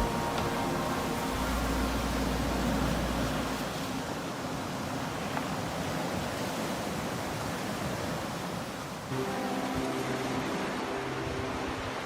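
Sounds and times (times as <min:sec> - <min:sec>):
ocean waves washing on shore: 0:00.0 - 0:12.0.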